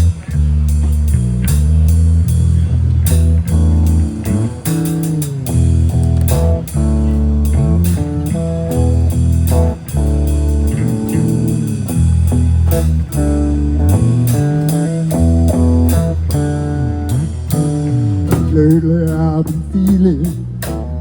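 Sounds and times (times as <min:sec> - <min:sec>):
blues guitar with bent notes: 0:00.0 - 0:21.0
deep bass guitar line: 0:00.0 - 0:21.0.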